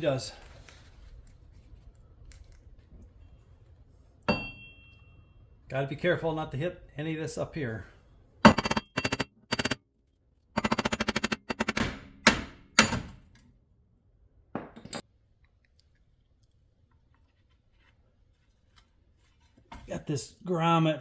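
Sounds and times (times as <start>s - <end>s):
metal-on-metal hammering: 4.3s - 4.9s, 8.5s - 9.8s, 10.6s - 13.2s.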